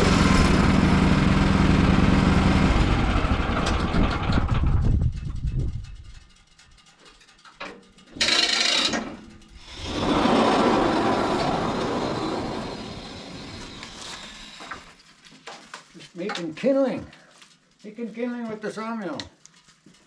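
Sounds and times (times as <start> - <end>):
band sawmill cutting wood: 0.0 - 4.1, 8.2 - 15.0.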